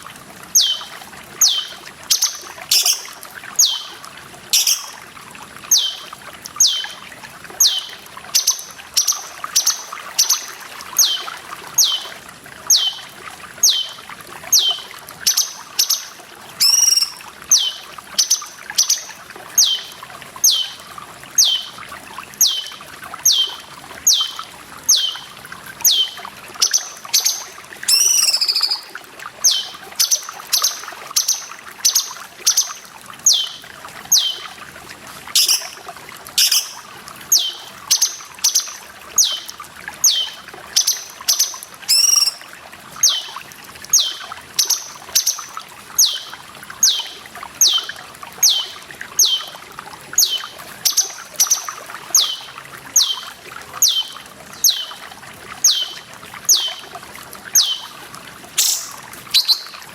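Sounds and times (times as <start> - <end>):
water trickling: 0.0 - 59.9
bird chirps: 0.6 - 3.9, 4.6 - 5.0, 5.7 - 6.0, 6.6 - 7.0, 7.6 - 12.1, 12.7 - 13.0, 13.6 - 14.0, 14.6 - 20.8, 21.4 - 21.8, 22.4 - 34.4, 35.4 - 35.8, 36.4 - 42.4, 44.0 - 49.5, 50.2 - 53.2, 53.8 - 55.0, 55.6 - 56.8, 57.6 - 57.9, 58.6 - 59.8
bird whistling downward calls: 0.6 - 3.9, 4.6 - 5.0, 5.7 - 7.0, 7.6 - 12.1, 12.7 - 13.0, 13.6 - 16.0, 16.6 - 20.8, 21.4 - 21.8, 22.4 - 32.7, 33.3 - 34.4, 35.4 - 35.8, 36.4 - 42.4, 46.0 - 49.5, 52.2 - 55.0, 55.6 - 56.8, 57.6 - 57.9, 58.6 - 59.8.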